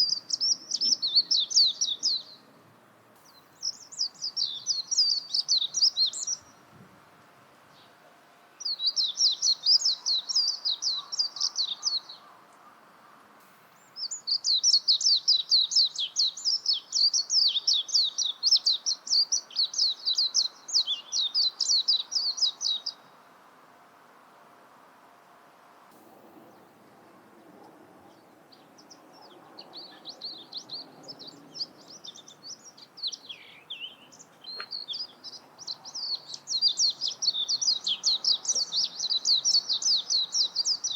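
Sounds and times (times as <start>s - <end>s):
bird rapid high twittering: 28.8s - 40.9s.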